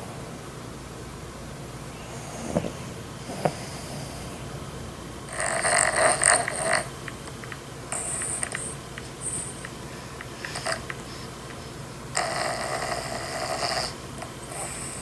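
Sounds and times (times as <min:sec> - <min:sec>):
breathy noises: 0:01.9 - 0:15.0
loud snoring: 0:02.1 - 0:04.4, 0:05.3 - 0:07.0, 0:07.9 - 0:09.7, 0:10.4 - 0:15.0
small clicks: 0:05.8 - 0:11.7.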